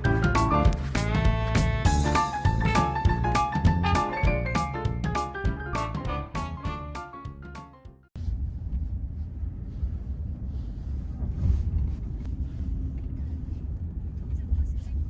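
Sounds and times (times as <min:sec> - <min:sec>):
low background rumble: 0:08.2 - 0:15.0.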